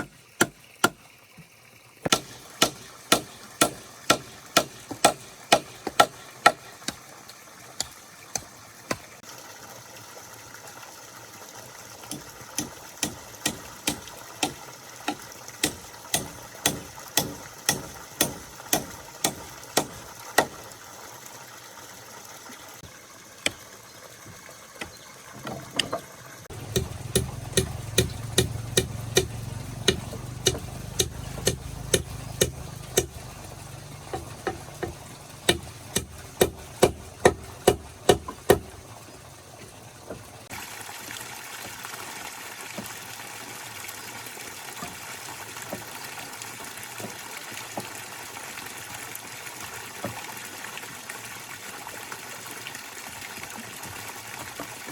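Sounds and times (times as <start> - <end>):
sharp tool strikes: 2.1 - 7.0, 12.1 - 20.6, 26.6 - 33.3, 34.1 - 38.7.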